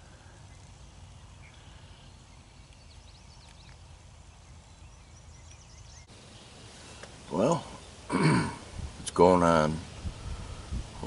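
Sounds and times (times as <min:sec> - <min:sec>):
faint bird chirps: 0:00.0 - 0:08.2.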